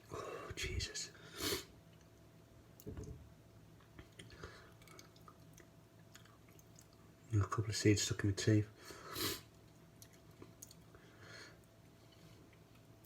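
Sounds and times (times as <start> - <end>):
person chewing: 3.9 - 7.0, 9.6 - 10.9.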